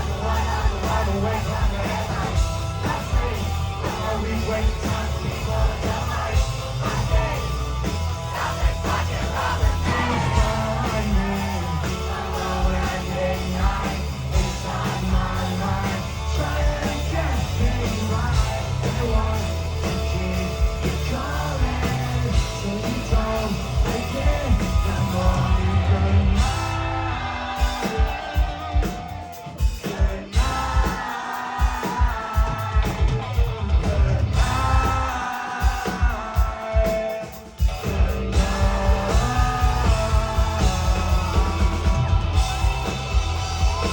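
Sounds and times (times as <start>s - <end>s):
live rock band music: 0.0s - 43.9s
person singing: 8.3s - 33.1s, 33.8s - 43.9s.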